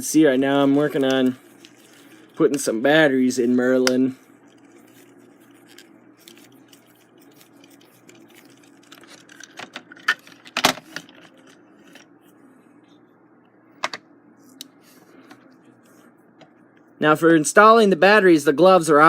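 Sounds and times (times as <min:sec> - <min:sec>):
faint hum: 0:00.0 - 0:19.0
batteries clicking and rattling: 0:04.4 - 0:12.1.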